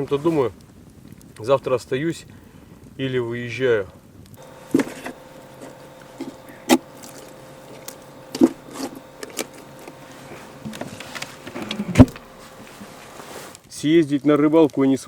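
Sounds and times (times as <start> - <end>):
faint steady hum: 4.2 - 13.8
knocks and clicks: 4.4 - 12.7.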